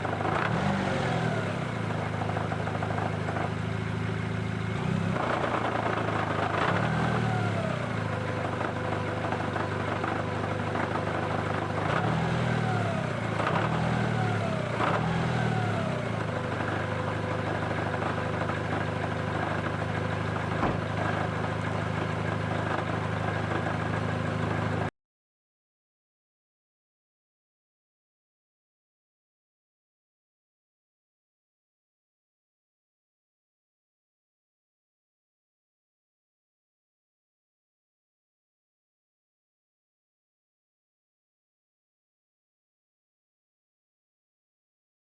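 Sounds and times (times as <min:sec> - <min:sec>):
car engine running: 0:00.0 - 0:24.9.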